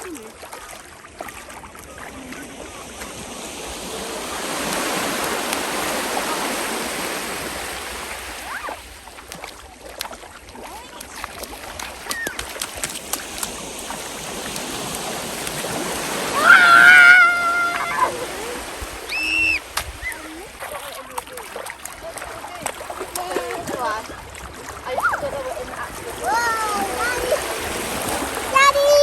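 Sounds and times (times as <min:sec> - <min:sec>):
small waves breaking on beach: 0:00.0 - 0:29.0
child calling: 0:16.4 - 0:20.3, 0:26.2 - 0:27.5, 0:28.5 - 0:29.0.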